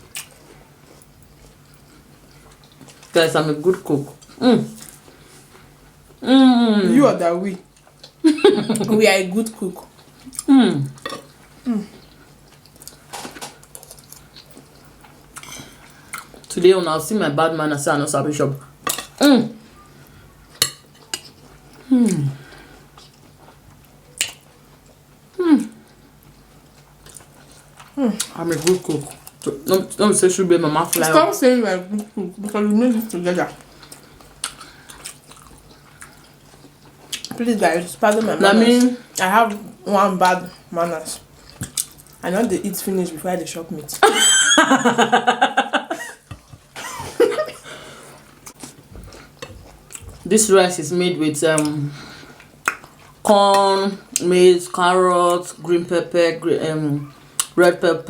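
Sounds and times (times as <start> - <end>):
faint chewing: 0.0 - 6.2, 7.5 - 8.2, 8.8 - 16.5, 18.9 - 29.8, 33.4 - 42.2, 47.5 - 50.4
woman laughing: 8.2 - 9.1, 44.0 - 47.8.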